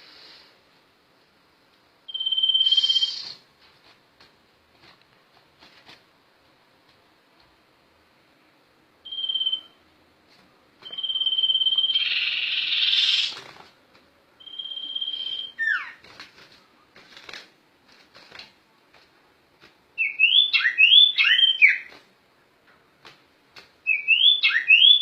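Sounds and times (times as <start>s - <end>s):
high whistled bird notes: 2.1s - 3.4s, 9.0s - 9.8s, 10.8s - 13.4s, 14.4s - 16.0s, 20.0s - 21.9s, 23.9s - 25.0s
loud buzzing bird trill: 2.1s - 3.4s, 10.9s - 13.4s.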